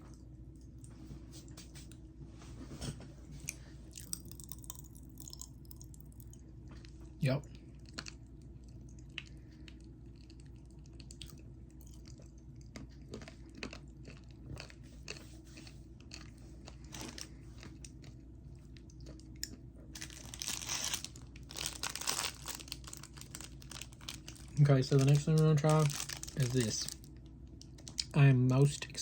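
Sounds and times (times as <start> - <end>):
person chewing candy: 3.5 - 28.2
plastic wrapper crinkling: 16.8 - 17.3, 20.0 - 28.0.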